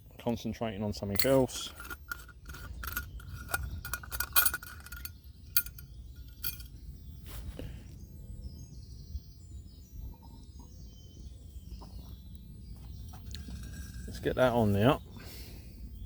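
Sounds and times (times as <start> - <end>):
metal cookware clinking: 1.2 - 6.7.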